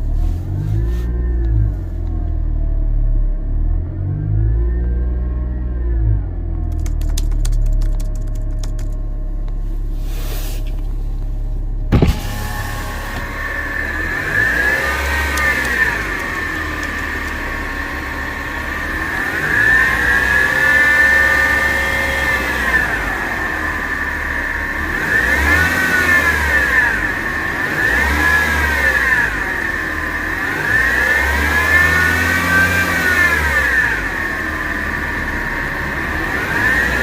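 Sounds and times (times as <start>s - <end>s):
car engine revving: 11.8s - 37.0s.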